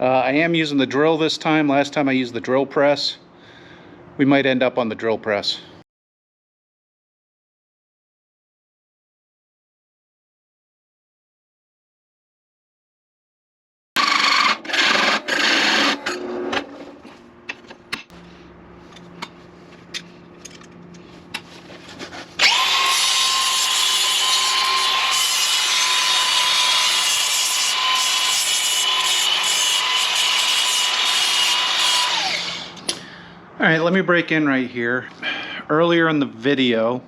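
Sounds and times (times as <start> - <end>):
electric drill high whine: 14.0 - 16.6, 22.4 - 32.8
hole saw grinding metal: 14.0 - 16.7, 22.4 - 32.8.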